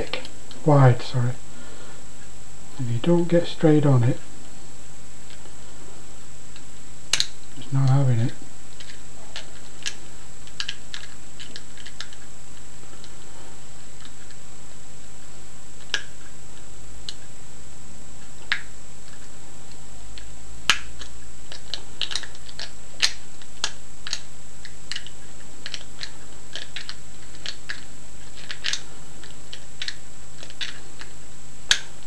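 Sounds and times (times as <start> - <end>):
steady electrical hum: 0.0 - 32.0.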